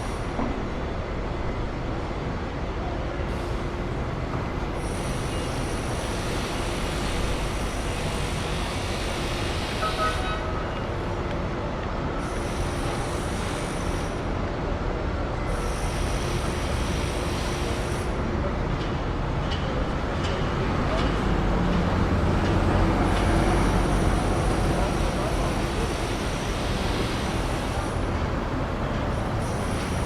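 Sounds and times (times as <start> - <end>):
passing rail vehicles: 0.0 - 30.0
traffic rumble: 18.2 - 30.0.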